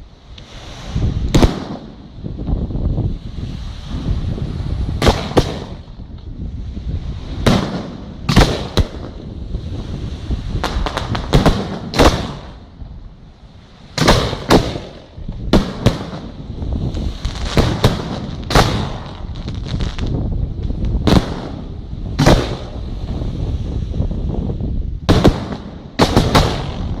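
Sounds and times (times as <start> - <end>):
firework shells booming: 1.3 - 2.1, 5.0 - 5.9, 7.4 - 9.4, 10.6 - 12.7, 13.9 - 16.6, 17.4 - 22.8, 25.1 - 27.0
small firework bangs: 5.0 - 5.8, 7.4 - 9.2, 10.6 - 12.6, 14.0 - 16.4, 17.0 - 22.8, 25.1 - 27.0
low rumble: 15.0 - 25.1.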